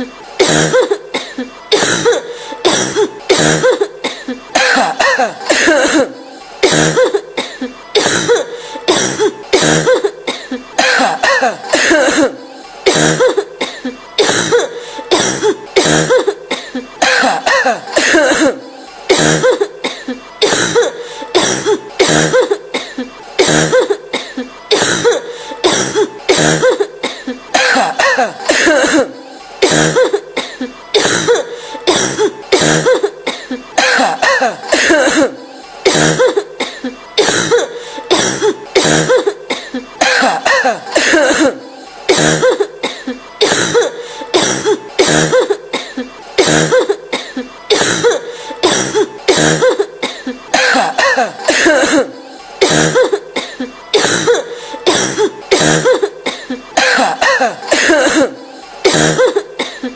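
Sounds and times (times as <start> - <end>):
woman coughing: 0.4 - 59.9.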